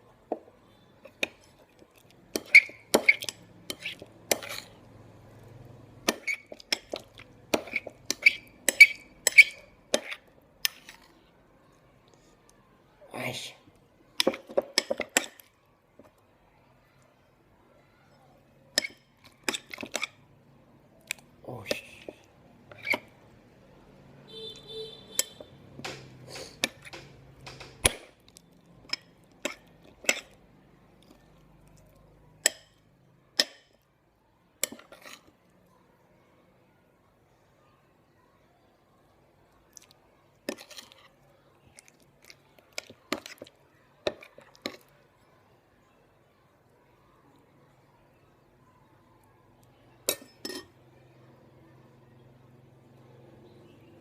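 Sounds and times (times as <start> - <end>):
containers and utensils clicking: 25.2 - 30.4.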